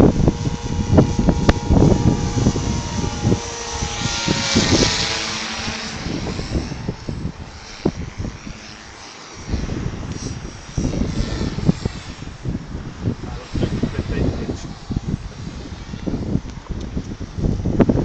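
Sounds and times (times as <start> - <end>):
model helicopter rotor whine: 0.0 - 18.0
wind buffeting microphone: 0.0 - 18.0.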